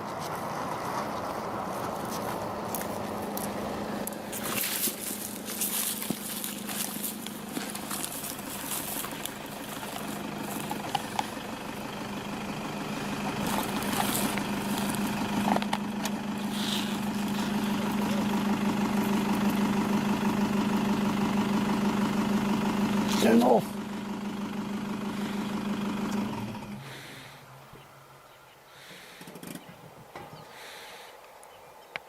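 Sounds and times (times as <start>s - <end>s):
faint clicks and rustles: 0.0s - 11.5s
motor engine idling: 0.4s - 31.0s.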